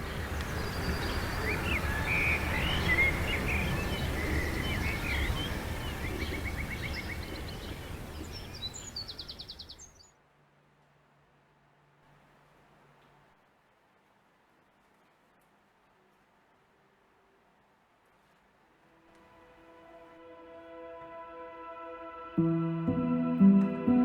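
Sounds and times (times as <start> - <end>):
small birds chirping: 0.0 - 10.2.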